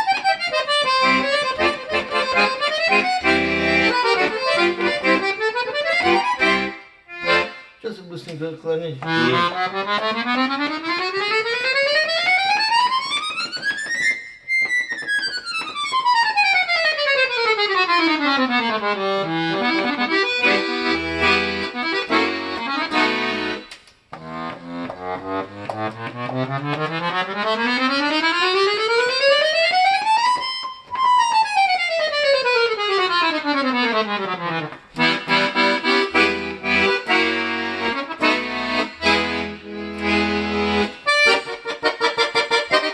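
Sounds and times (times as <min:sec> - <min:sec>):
button accordion playing: 0:00.0 - 0:08.0, 0:09.0 - 0:42.9.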